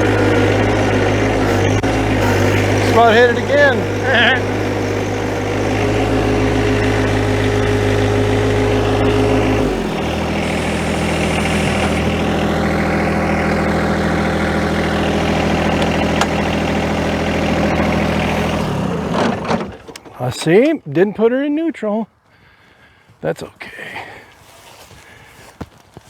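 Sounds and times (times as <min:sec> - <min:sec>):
tractor diesel engine running: 0:00.0 - 0:20.4.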